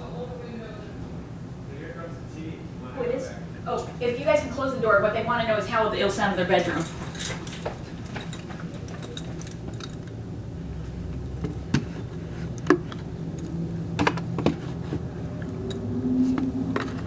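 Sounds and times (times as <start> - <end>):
low steady rumble: 7.9 - 17.0
sharp clicks and knocks: 11.1 - 17.0.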